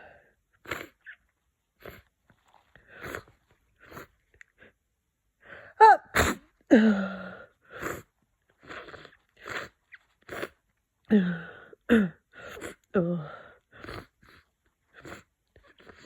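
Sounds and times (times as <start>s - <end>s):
congested sneeze: 5.8s - 6.5s.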